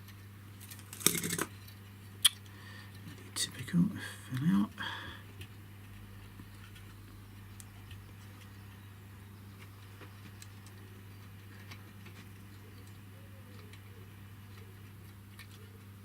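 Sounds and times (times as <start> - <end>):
steady low hum: 0.0 - 16.0
small tools clicking: 0.9 - 1.5.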